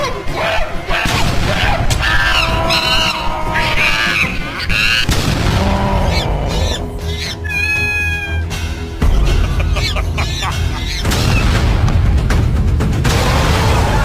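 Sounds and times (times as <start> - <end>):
background music: 0.0 - 14.0
shrill pitch-bending cries: 6.1 - 8.6, 9.8 - 11.4
cartoon sound effects: 7.2 - 8.4.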